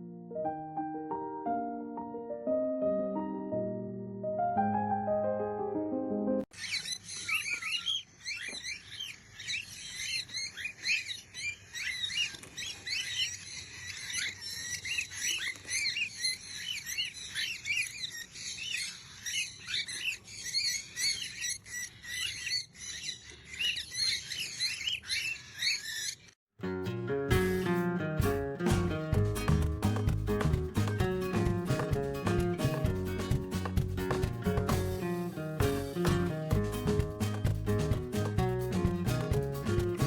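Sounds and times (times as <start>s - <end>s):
small birds chirping: 6.5s - 26.4s.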